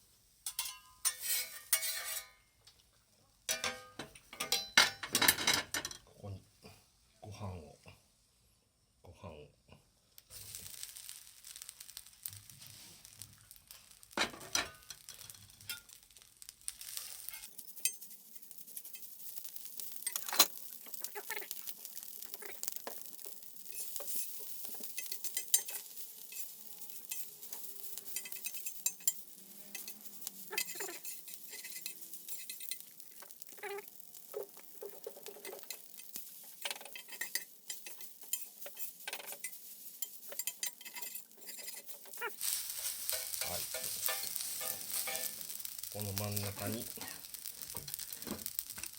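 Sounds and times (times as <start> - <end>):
rice sizzling on griddle: 0.0 - 9.0, 9.8 - 48.9
spatula scraping iron plate: 0.5 - 2.4, 28.0 - 32.8, 35.0 - 42.3, 43.0 - 45.4.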